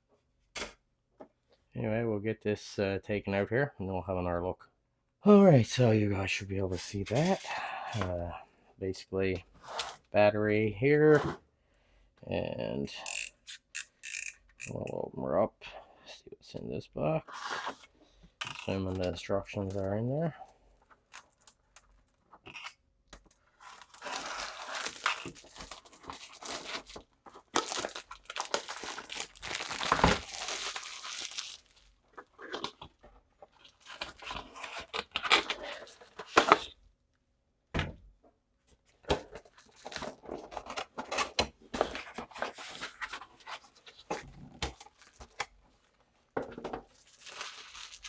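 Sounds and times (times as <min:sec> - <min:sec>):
packaging rustling and tearing: 0:23.3 - 0:36.8, 0:39.3 - 0:45.5, 0:46.8 - 0:48.0.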